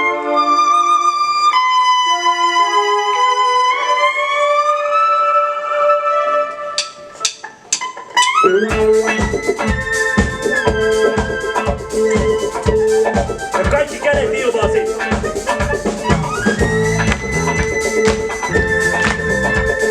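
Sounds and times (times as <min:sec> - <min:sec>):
held melodic notes: 0:00.0 - 0:19.9
live band music: 0:06.6 - 0:19.9
drum kit beat: 0:06.8 - 0:19.9.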